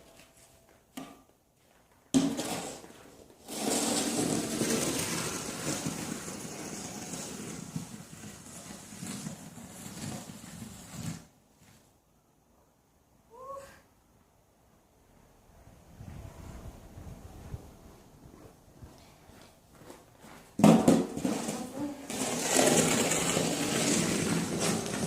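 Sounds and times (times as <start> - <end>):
shovel scraping snow: 3.5 - 11.2, 22.1 - 25.0.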